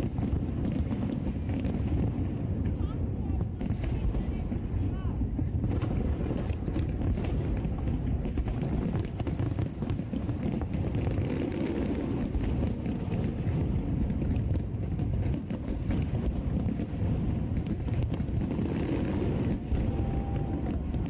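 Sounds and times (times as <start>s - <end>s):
fireworks bangs and crackles: 0.0s - 21.0s
fireworks booming: 0.0s - 21.0s.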